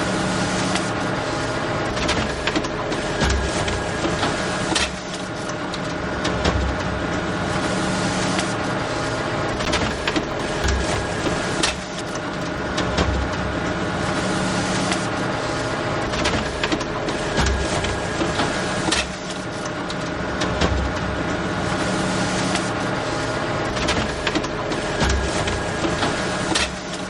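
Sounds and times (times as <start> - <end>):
sharp clicks: 9.6 - 12.9
low thumps: 9.6 - 13.2.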